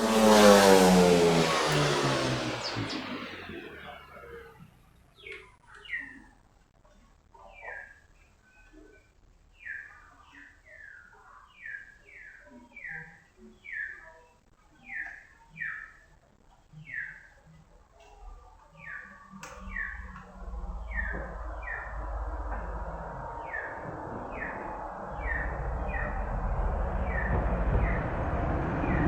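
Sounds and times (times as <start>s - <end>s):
low rumbling rushing noise: 0.0s - 4.0s, 19.5s - 29.0s
bird chirping: 0.0s - 4.4s, 18.7s - 29.0s.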